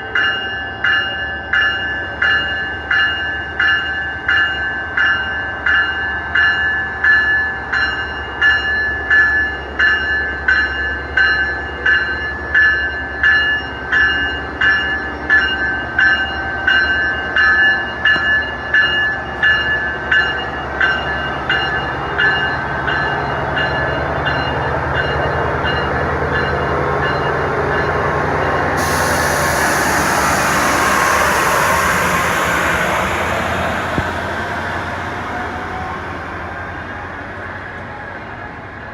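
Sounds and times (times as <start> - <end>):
rush of train noise: 0.0 - 38.9
train rumble: 13.9 - 38.9.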